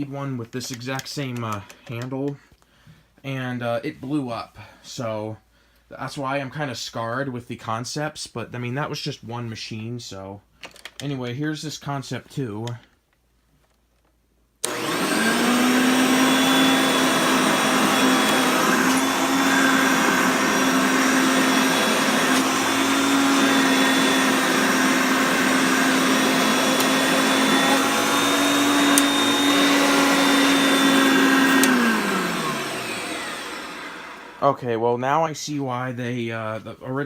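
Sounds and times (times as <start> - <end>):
vacuum cleaner motor running: 14.6 - 34.4
vacuum cleaner switch: 14.6 - 34.4.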